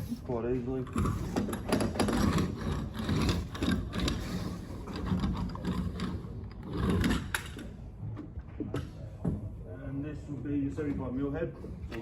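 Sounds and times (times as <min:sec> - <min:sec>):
tool clicks rattles and scrapes: 0:00.9 - 0:07.7.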